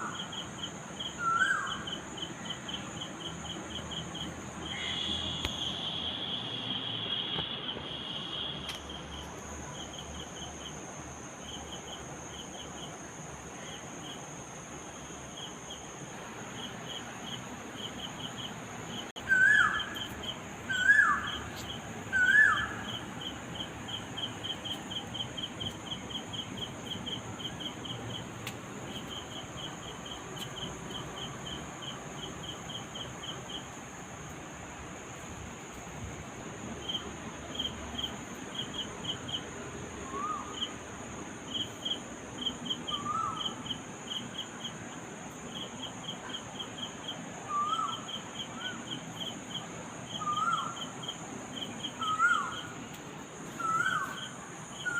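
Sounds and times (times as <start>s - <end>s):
crickets chirping: 0.0s - 54.9s
high-pitched insect drone: 4.6s - 8.5s.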